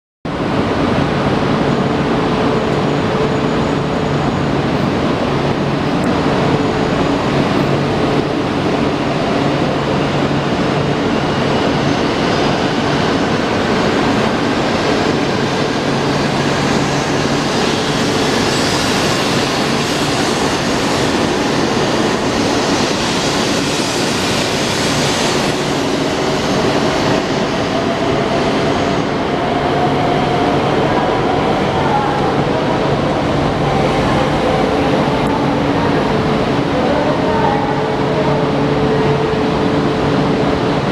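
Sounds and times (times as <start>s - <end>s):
electric train running noise: 0.5s - 40.9s.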